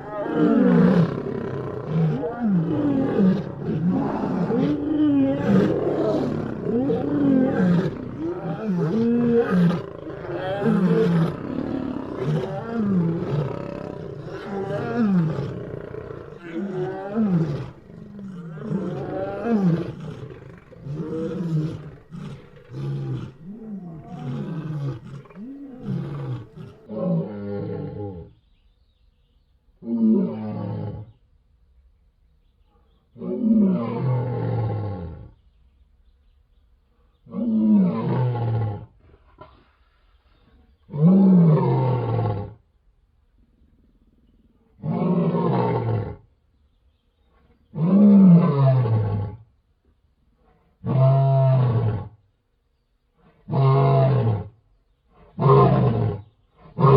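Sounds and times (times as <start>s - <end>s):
lion roaring: 0.0s - 28.1s.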